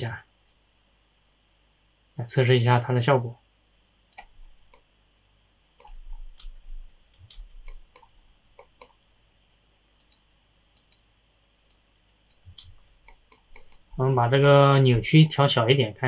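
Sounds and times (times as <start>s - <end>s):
computer mouse clicking: 4.1s - 4.8s, 5.8s - 9.0s, 10.0s - 11.1s, 11.7s - 13.8s.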